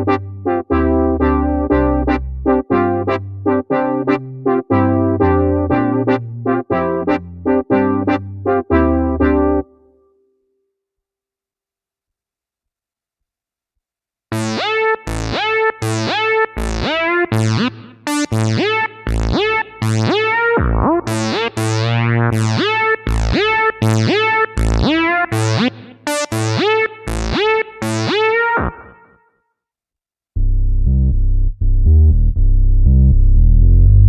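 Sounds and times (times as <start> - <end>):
low synth bass notes: 0.0 - 9.8, 14.4 - 28.9, 30.4 - 34.0
plucky synthesizer notes: 0.0 - 10.0, 14.3 - 29.1, 30.4 - 34.0.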